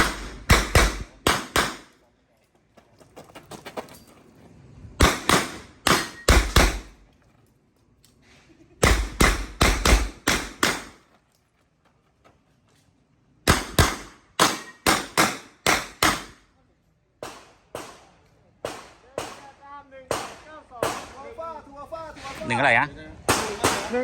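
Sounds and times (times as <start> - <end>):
handgun shots: 0.0 - 1.9, 5.0 - 6.9, 8.8 - 11.0, 13.5 - 16.4.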